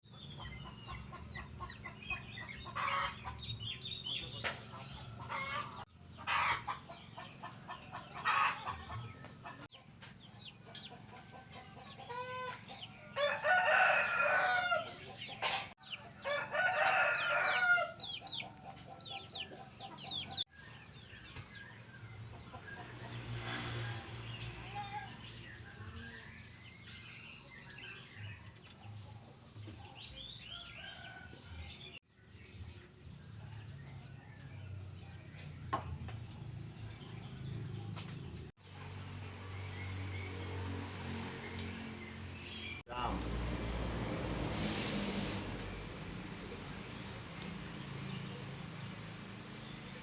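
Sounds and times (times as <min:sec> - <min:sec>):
small birds chirping: 0:00.0 - 0:40.8
chickens clucking: 0:00.1 - 0:38.5
rooster crowing: 0:11.4 - 0:15.2, 0:15.9 - 0:18.4, 0:30.4 - 0:32.0.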